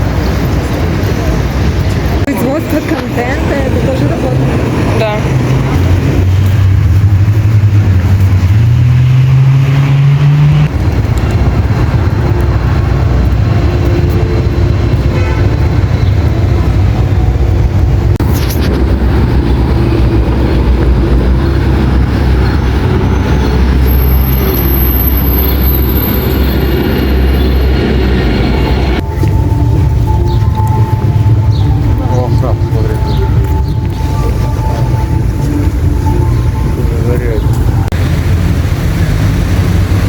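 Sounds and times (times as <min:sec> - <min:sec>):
heavy vehicle engine droning: 0:00.0 - 0:40.0.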